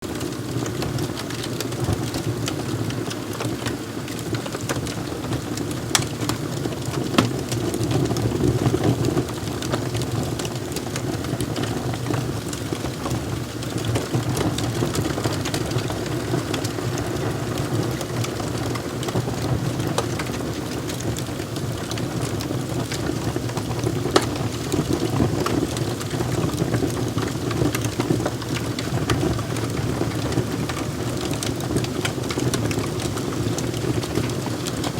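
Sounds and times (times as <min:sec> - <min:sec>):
low rumble of burning: 0:00.1 - 0:34.9
wood fire crackling: 0:00.1 - 0:34.9.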